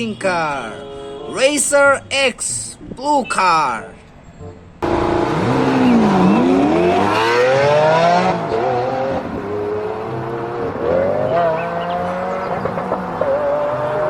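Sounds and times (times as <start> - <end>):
race car engine revving: 4.8 - 14.0.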